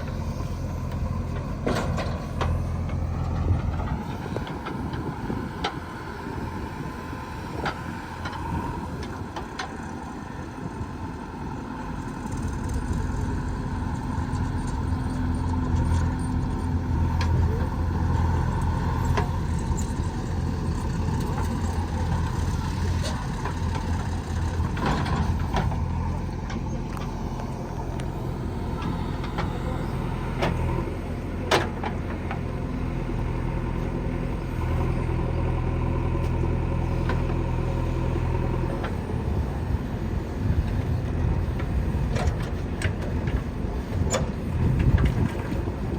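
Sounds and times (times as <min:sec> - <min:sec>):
diesel engine humming: 0:00.0 - 0:45.9.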